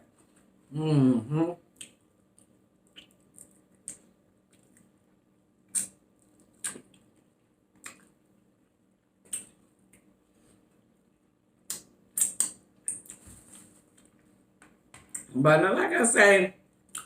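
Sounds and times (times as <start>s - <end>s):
wet chewing mouth clicks: 1.8s - 4.9s, 5.7s - 7.1s, 9.3s - 9.6s, 11.7s - 13.2s.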